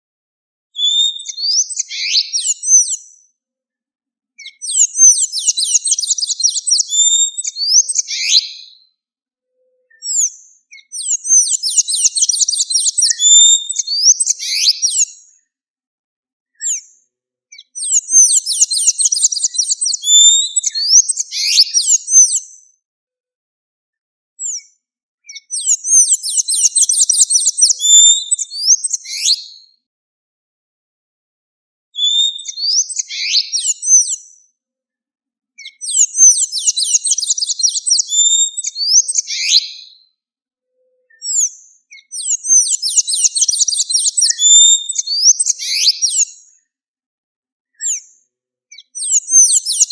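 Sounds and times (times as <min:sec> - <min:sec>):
bird singing squeaky high notes: 0:04.6 - 0:08.6, 0:10.0 - 0:15.1, 0:17.9 - 0:22.1, 0:25.6 - 0:29.5, 0:32.0 - 0:33.9, 0:35.9 - 0:39.9, 0:41.0 - 0:46.3.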